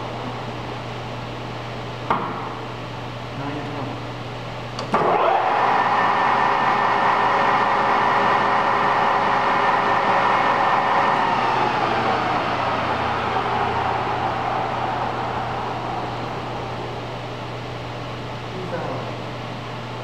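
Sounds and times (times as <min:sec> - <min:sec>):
lathe spindle whining: 0:04.9 - 0:18.4.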